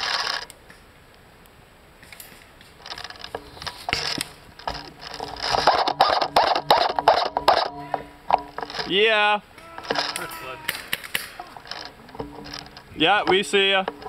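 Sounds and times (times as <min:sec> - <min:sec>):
gun mechanisms clacking: 0:02.1 - 0:07.7, 0:08.3 - 0:09.0, 0:09.7 - 0:14.0.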